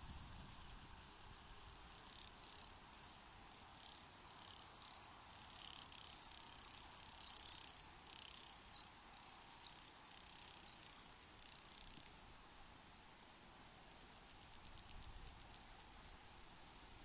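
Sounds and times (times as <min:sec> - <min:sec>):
crickets chirping: 0:01.8 - 0:12.2, 0:14.0 - 0:17.0.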